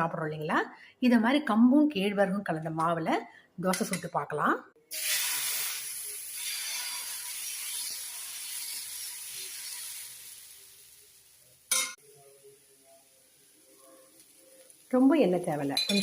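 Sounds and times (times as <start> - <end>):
batter sizzling on griddle: 4.9 - 16.0.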